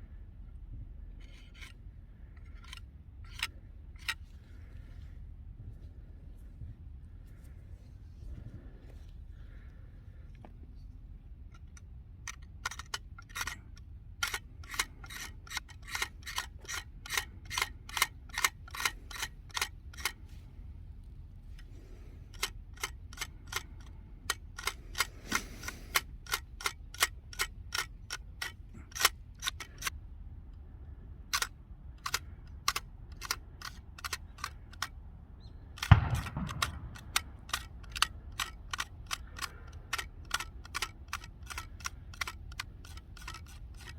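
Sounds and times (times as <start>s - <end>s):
sharp evenly spaced clicks: 11.5s - 20.2s, 21.6s - 30.0s, 31.3s - 35.0s, 35.7s - 43.9s.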